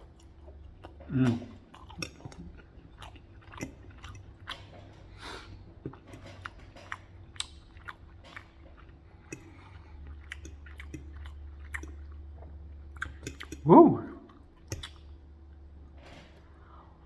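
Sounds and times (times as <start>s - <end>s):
person chewing food: 0.0s - 17.0s
steady low hum: 0.0s - 17.0s
small mouth clicks: 9.3s - 12.2s, 13.0s - 13.7s, 14.3s - 15.2s.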